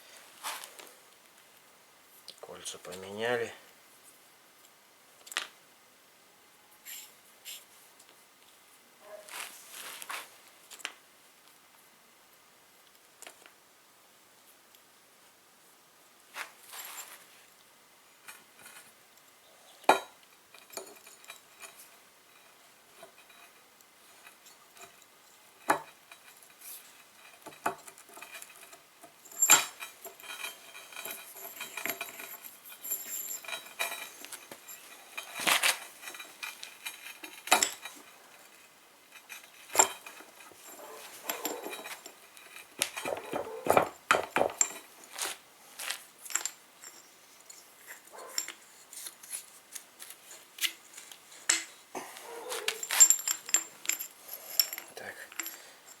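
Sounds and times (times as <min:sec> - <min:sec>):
metal parts clinking and rattling: 0:19.9 - 0:49.4, 0:51.0 - 0:56.0
metallic knocks: 0:39.4 - 0:44.8.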